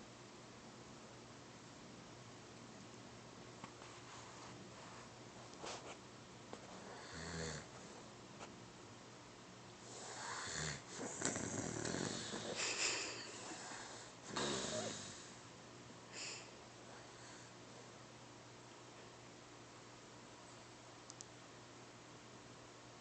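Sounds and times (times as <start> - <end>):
person snoring: 6.8 - 7.7, 9.9 - 15.4.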